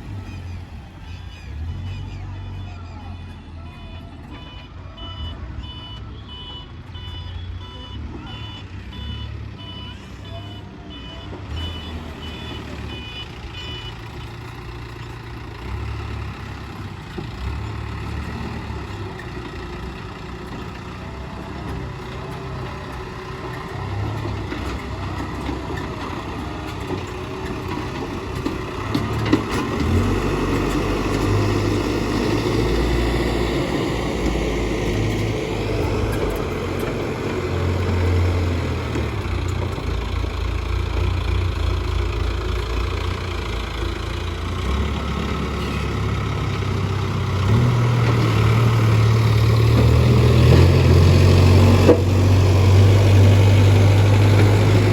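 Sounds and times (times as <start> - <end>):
diesel engine working: 0.0 - 54.9
reversing alarm beeping: 1.5 - 14.0.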